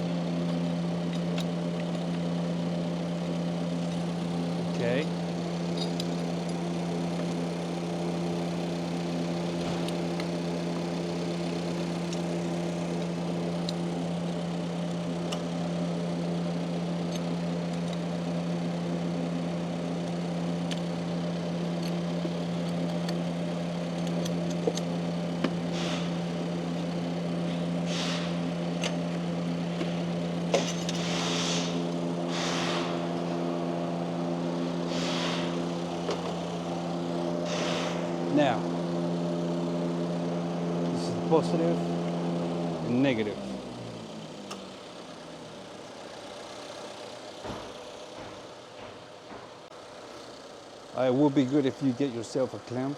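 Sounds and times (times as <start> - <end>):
hand tools clicking and scraping: 0.4 - 2.4, 3.0 - 7.8, 8.5 - 15.6, 16.8 - 38.8.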